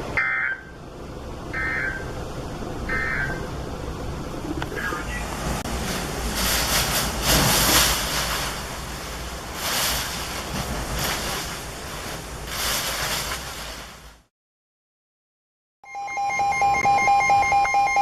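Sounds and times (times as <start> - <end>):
deep rumble: 1.4 - 14.3
hurricane-force wind gusts: 2.2 - 14.2.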